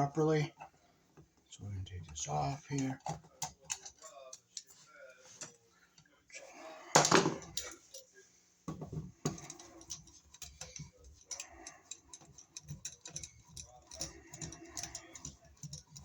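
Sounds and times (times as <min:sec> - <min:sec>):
small clicks and knocks: 0:08.7 - 0:16.0.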